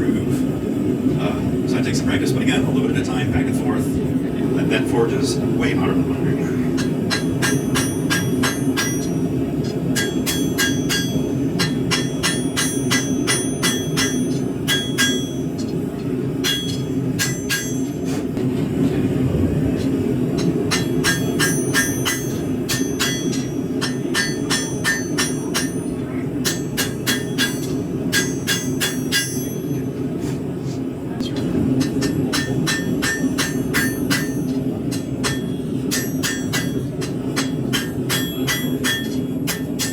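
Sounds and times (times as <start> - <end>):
hammer ringing on anvil: 6.8 - 15.7, 16.4 - 18.2, 20.3 - 30.0, 31.8 - 39.9.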